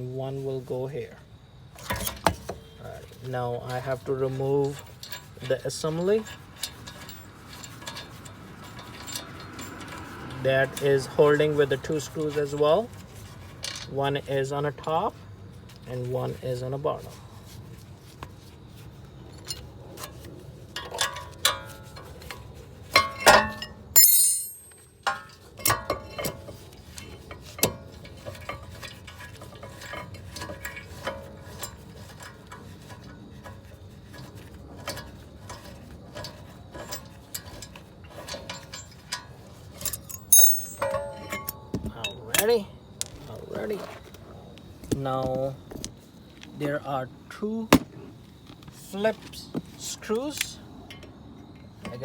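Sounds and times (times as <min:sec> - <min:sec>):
hand tools clinking on metal: 0:23.0 - 0:25.9, 0:39.8 - 0:41.6.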